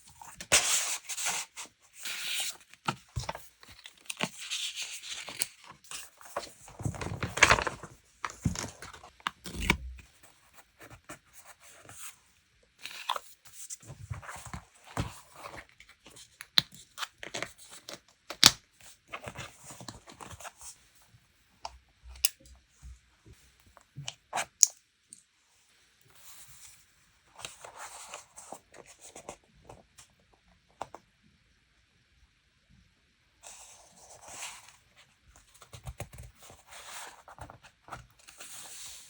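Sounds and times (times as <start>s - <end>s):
paper rustling and crinkling: 0.2s - 12.1s, 35.4s - 39.0s.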